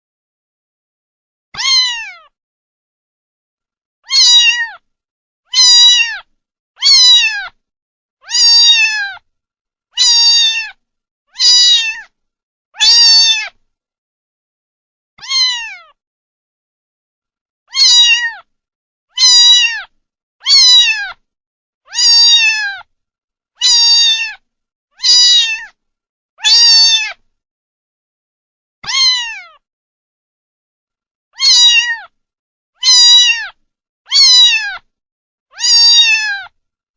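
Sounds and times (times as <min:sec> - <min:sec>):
kitten meowing: 0:01.6 - 0:02.3, 0:04.0 - 0:04.8, 0:05.5 - 0:07.6, 0:08.2 - 0:09.2, 0:10.0 - 0:12.1, 0:12.8 - 0:13.6, 0:15.2 - 0:16.0, 0:17.7 - 0:18.5, 0:19.1 - 0:21.2, 0:21.9 - 0:22.9, 0:23.6 - 0:24.4, 0:25.0 - 0:25.8, 0:26.4 - 0:27.2, 0:28.8 - 0:29.6, 0:31.4 - 0:32.1, 0:32.8 - 0:34.9, 0:35.5 - 0:36.6.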